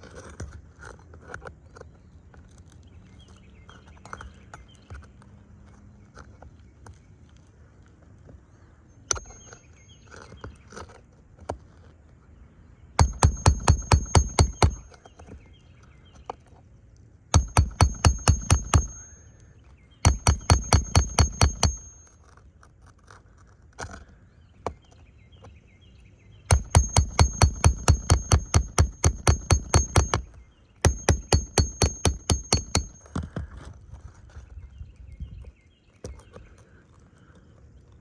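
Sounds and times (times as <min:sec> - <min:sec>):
rapid ringing tool knocks: 0:09.1 - 0:09.6, 0:13.0 - 0:15.0, 0:17.4 - 0:19.4, 0:20.0 - 0:22.2, 0:26.5 - 0:33.4.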